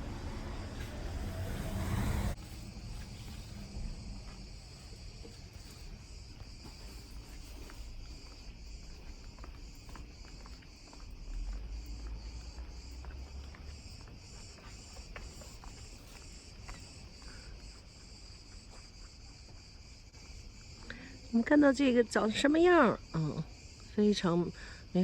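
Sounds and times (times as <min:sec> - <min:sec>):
low rumble: 0:00.0 - 0:05.3
insects chirring: 0:00.0 - 0:25.0.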